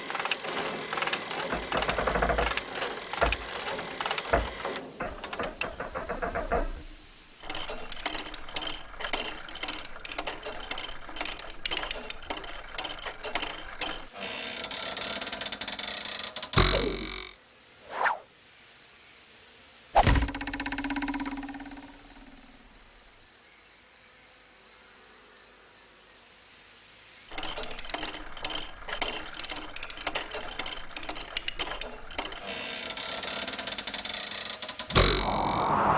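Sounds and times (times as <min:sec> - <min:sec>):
cartoon clicks and rattles: 0:00.0 - 0:17.4, 0:20.0 - 0:22.7, 0:27.3 - 0:35.7
cartoon swooping sounds: 0:17.9 - 0:18.3, 0:34.9 - 0:35.9.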